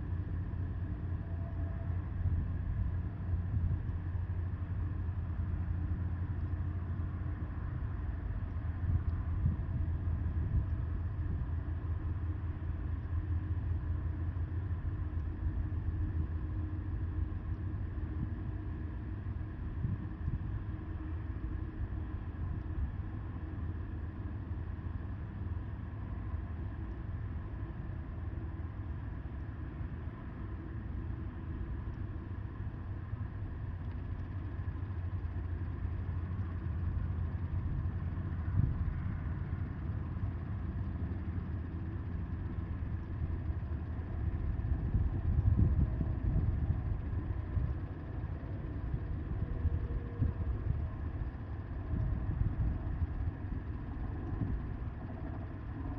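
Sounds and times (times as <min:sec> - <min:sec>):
wind buffeting microphone: 0:44.4 - 0:47.8.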